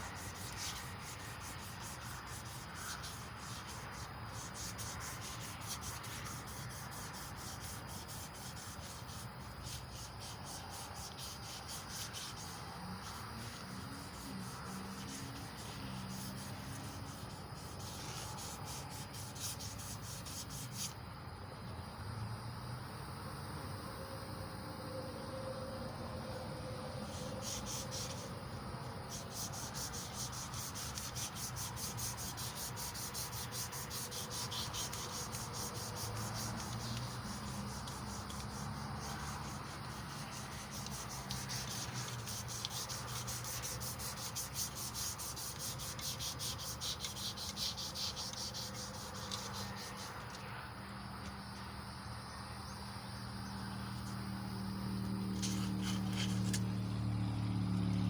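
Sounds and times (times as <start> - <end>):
emery cloth rasping on metal: 29.1 - 50.4, 55.4 - 56.6.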